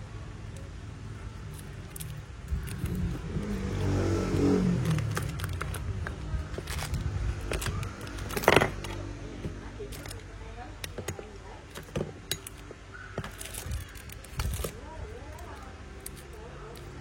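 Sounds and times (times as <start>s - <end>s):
motor vehicle passing: 1.1s - 10.7s.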